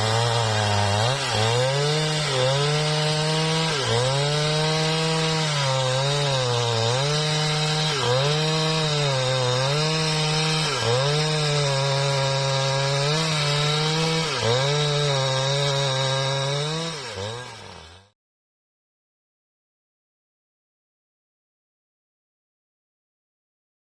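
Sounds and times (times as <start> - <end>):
chainsaw cutting a log: 0.0 - 18.2.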